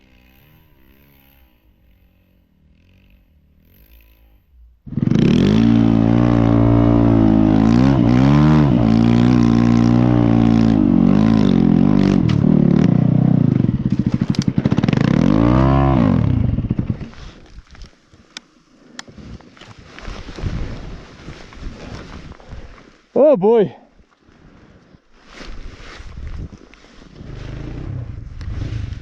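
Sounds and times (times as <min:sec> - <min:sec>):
motorcycle engine revving: 0:00.0 - 0:17.4, 0:27.1 - 0:29.0.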